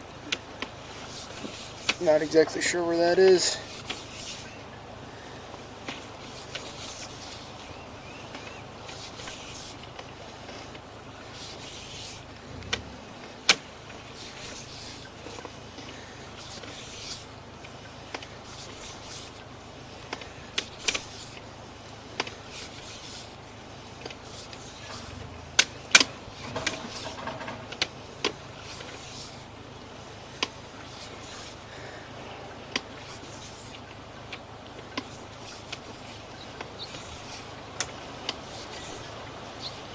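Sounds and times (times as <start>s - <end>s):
push cable rustling: 0.2s - 4.7s, 5.8s - 39.9s
sharp clicks and knocks: 24.0s - 29.4s.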